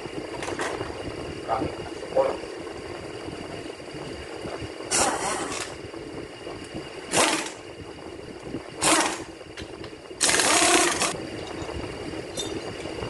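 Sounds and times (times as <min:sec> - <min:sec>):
workshop hum: 0:00.0 - 0:13.0
pneumatic tool hissing: 0:04.9 - 0:05.7, 0:07.1 - 0:07.6, 0:08.8 - 0:09.3, 0:10.2 - 0:11.2.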